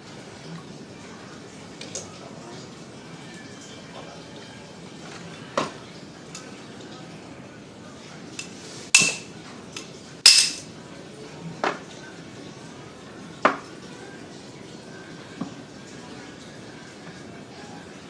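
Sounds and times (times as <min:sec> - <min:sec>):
metal tools knocking and clinking: 0:09.0 - 0:09.3, 0:10.3 - 0:10.7.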